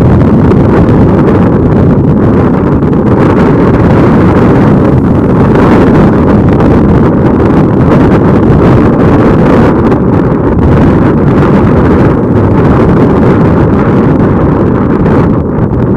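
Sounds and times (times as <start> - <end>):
wind blowing across microphone: 0.0 - 15.9.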